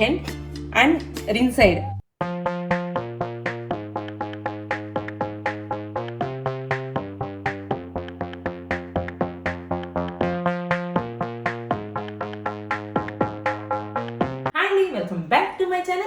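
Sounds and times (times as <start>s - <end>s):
light electronic music: 0.0s - 14.5s.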